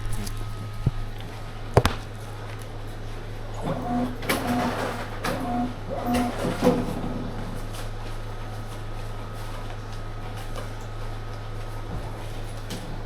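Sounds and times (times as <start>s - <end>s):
electrical hum: 0.0s - 13.0s
ticket printer whirring: 3.5s - 7.8s.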